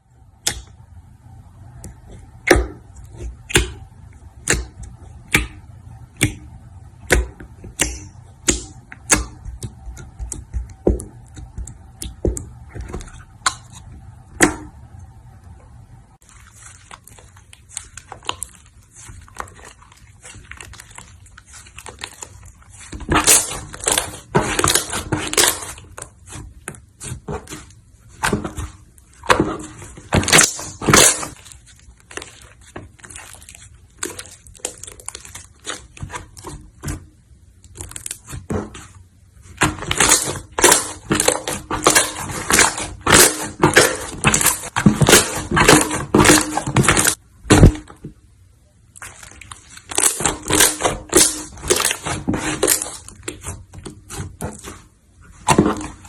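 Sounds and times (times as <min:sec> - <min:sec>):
slime crackling and popping: 0:16.2 - 0:36.8, 0:37.5 - 0:48.0, 0:48.8 - 0:56.0.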